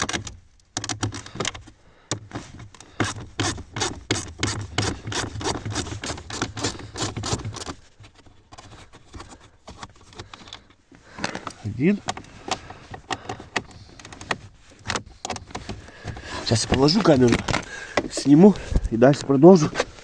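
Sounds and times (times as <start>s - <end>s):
socket ratchet clicking: 0.0s - 7.8s
scraping and knocking on plastic: 0.0s - 20.0s.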